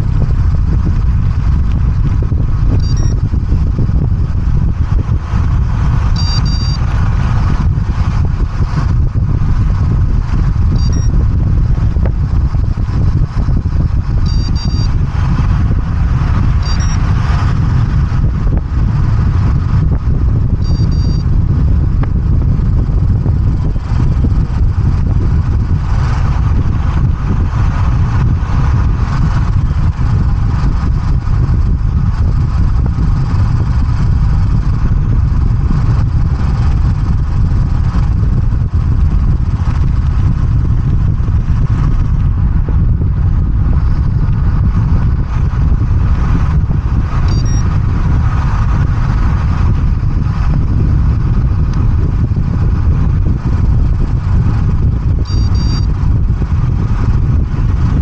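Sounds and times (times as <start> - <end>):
loud low rumble: 0.0 - 58.0
short high beeps: 2.8 - 3.2, 6.2 - 6.8, 10.8 - 11.1, 14.2 - 14.9, 16.6 - 17.0, 20.6 - 21.2, 47.3 - 47.6, 55.2 - 55.9.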